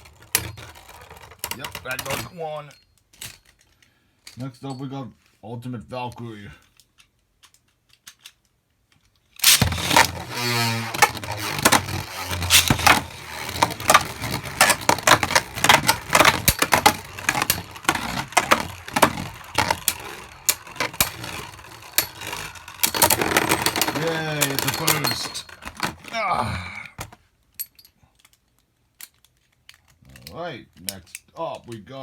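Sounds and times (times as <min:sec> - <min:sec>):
plastic tops clacking and rattling: 0:00.0 - 0:03.8, 0:06.7 - 0:26.3
spinning top launch whir: 0:09.4 - 0:25.9.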